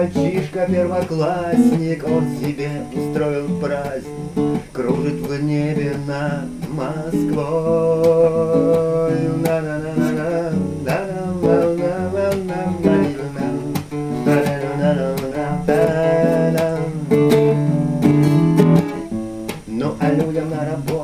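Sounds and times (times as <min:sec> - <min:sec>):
acoustic guitar strumming: 0:00.0 - 0:21.0.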